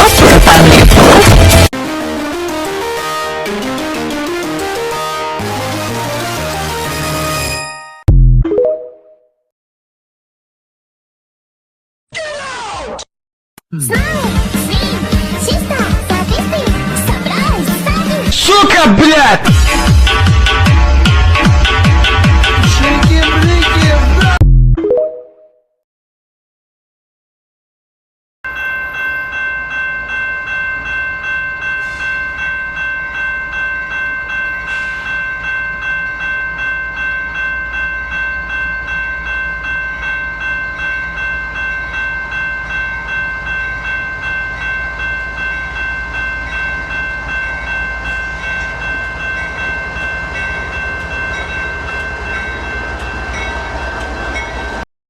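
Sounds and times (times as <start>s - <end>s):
train rumble: 13.9s - 18.5s, 42.2s - 54.8s.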